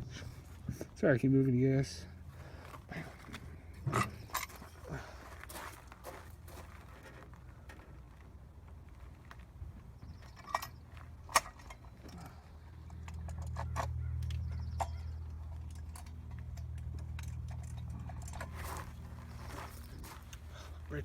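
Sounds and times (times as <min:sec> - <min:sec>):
low steady rumble: 0:00.0 - 0:21.0.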